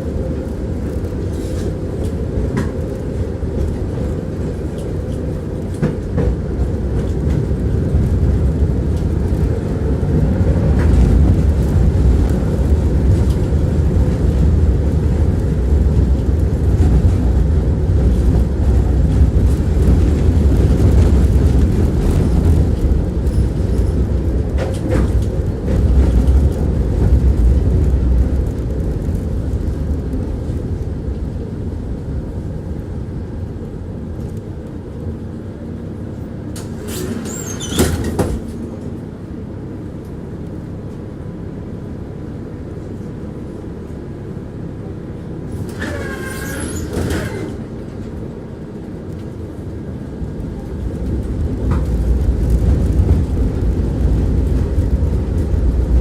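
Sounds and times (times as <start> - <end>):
tram wheels clattering on rails: 0.0 - 56.0
high-pitched wheel squeals: 45.7 - 47.6.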